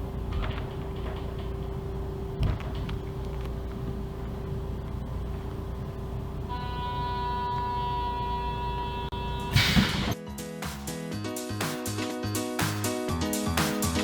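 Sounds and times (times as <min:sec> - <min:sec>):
train horn blast: 0:06.5 - 0:09.8
music: 0:09.1 - 0:14.0.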